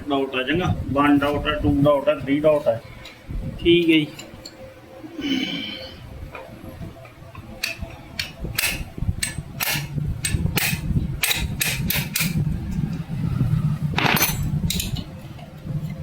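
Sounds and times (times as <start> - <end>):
metal tools clicking and knocking: 7.6 - 12.4, 14.0 - 15.1.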